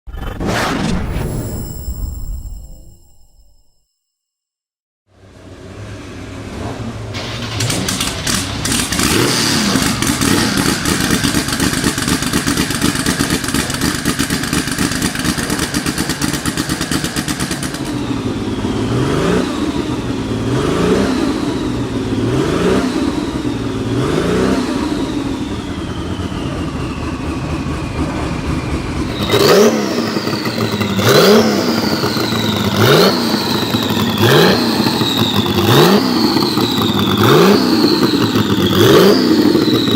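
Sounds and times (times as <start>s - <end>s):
turbocharged engine revving: 5.2s - 39.9s
exhaust backfire bangs: 6.8s - 39.9s
falling turbo whistle: 24.4s - 39.9s.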